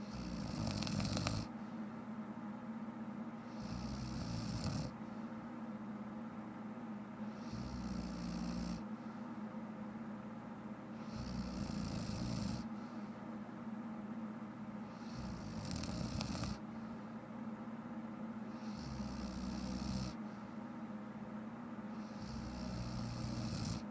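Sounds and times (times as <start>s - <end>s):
woman snoring: 0.0s - 1.5s, 3.5s - 5.0s, 7.3s - 8.8s, 11.0s - 12.7s, 14.9s - 16.6s, 18.6s - 20.2s, 22.0s - 23.9s.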